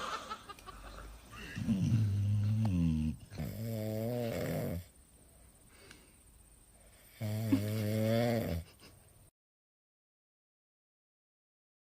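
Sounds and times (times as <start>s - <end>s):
dog snoring: 1.6s - 4.9s, 7.0s - 8.7s.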